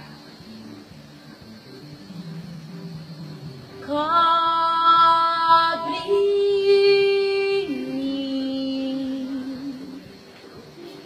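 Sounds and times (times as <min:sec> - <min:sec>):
woman singing unaccompanied: 0:03.8 - 0:10.3.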